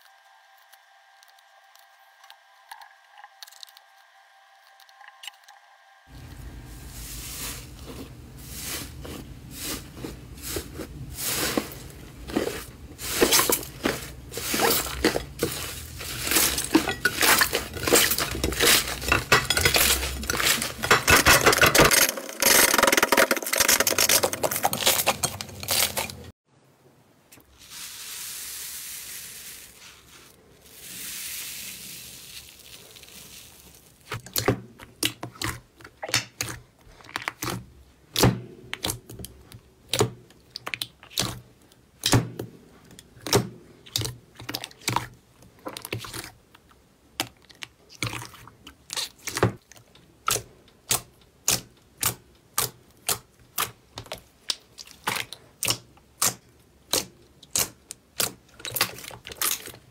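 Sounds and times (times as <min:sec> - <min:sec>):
slime rustling hiss: 0:06.7 - 0:16.7, 0:27.5 - 0:34.1.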